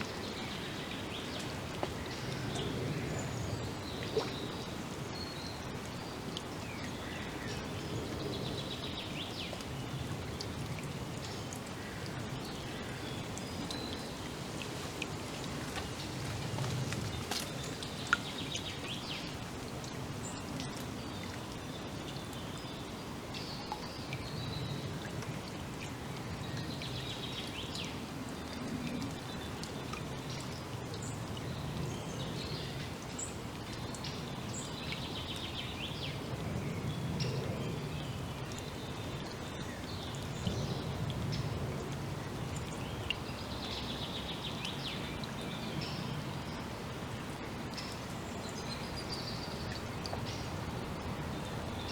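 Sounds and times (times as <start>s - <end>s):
songbirds trilling and chirping: 11.2s - 19.4s
steady hiss: 11.8s - 20.1s.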